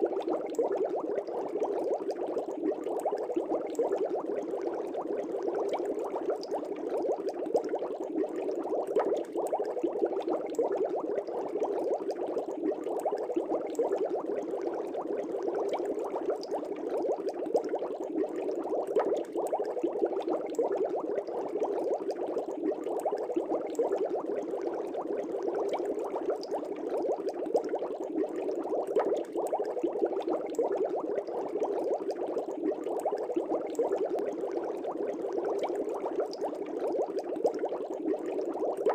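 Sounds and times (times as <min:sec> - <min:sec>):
aquarium air bubbles popping: 0:00.0 - 0:38.9.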